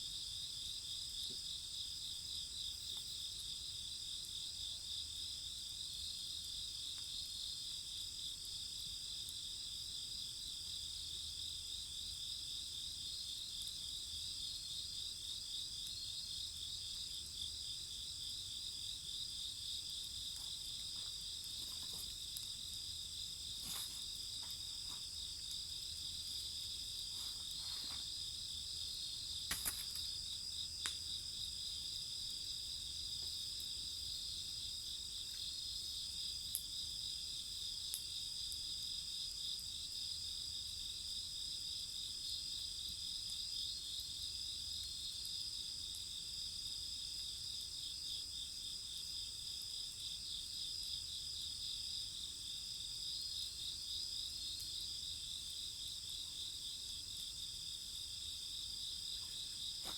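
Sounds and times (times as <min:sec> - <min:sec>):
crickets and insects trilling: 0:11.6 - 0:38.5, 0:51.0 - 0:59.9
campfire wood popping: 0:17.6 - 0:36.8, 0:59.2 - 0:59.9.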